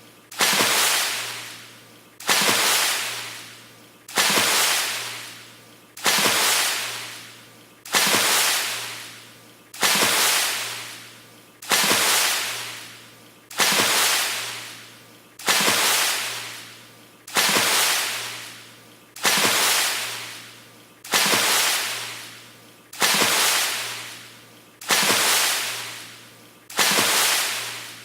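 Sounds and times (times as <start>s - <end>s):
water splashing: 0.3s - 1.6s, 2.2s - 3.5s, 4.1s - 5.4s, 6.0s - 7.2s, 7.9s - 9.2s, 9.8s - 11.0s, 11.6s - 18.6s, 19.2s - 20.5s, 21.1s - 22.4s, 23.0s - 24.2s, 24.8s - 26.1s, 26.7s - 28.0s.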